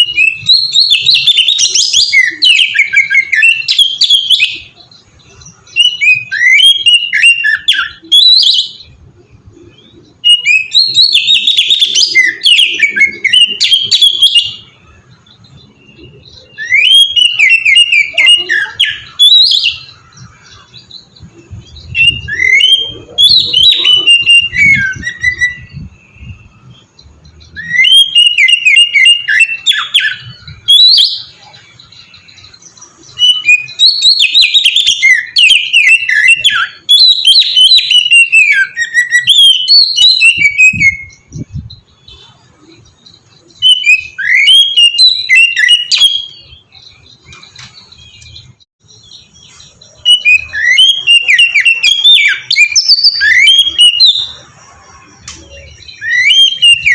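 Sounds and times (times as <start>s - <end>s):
bird singing whistled phrases: 0.0s - 9.0s, 9.6s - 56.9s.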